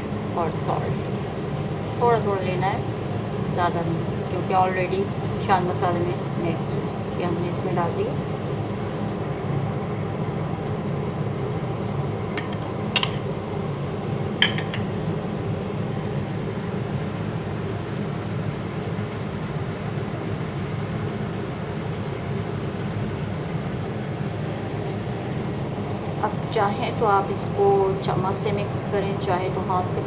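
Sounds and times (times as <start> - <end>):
low background hum: 0.0 - 30.0
kitchen utensils clinking: 12.4 - 13.3, 14.4 - 15.1.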